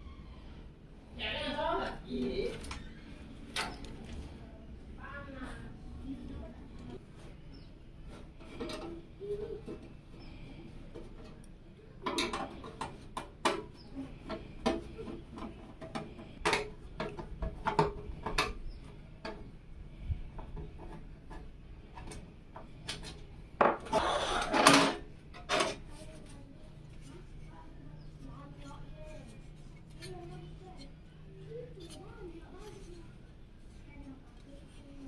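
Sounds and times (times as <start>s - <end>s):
scraping and rustling: 5.4s - 35.0s.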